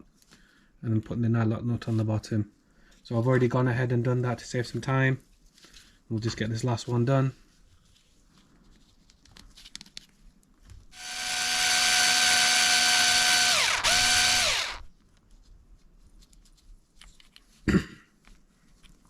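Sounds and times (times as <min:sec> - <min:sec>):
electric screwdriver motor whine: 0:11.0 - 0:14.9.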